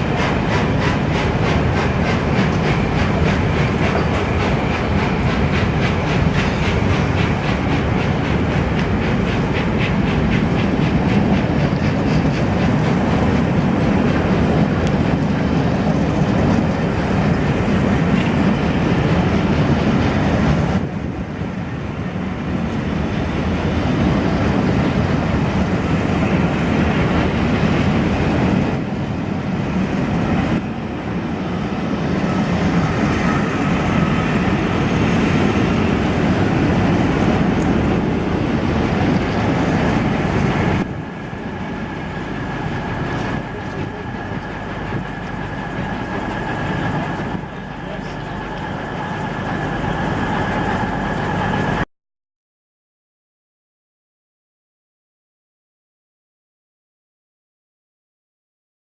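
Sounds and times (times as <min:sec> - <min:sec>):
wheels clickety-clack: 0:00.0 - 0:21.0, 0:31.8 - 0:51.8
train running on rails: 0:00.0 - 0:51.9.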